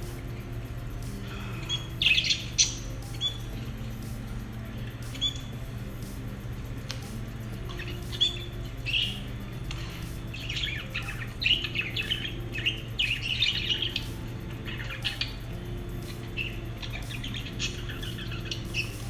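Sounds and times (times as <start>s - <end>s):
birds chirping and squeaking: 1.3s - 3.9s, 7.7s - 15.4s, 16.3s - 19.0s.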